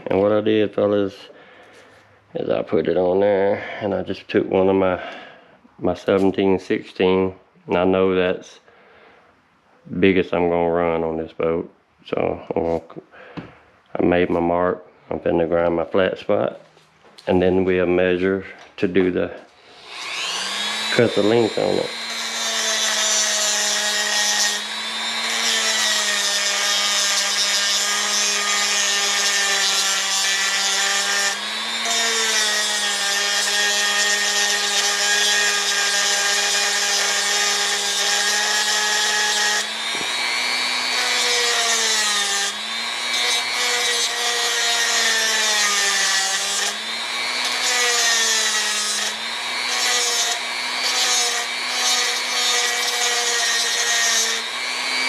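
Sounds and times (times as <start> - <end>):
electric grinder grinding metal: 19.6 - 55.0.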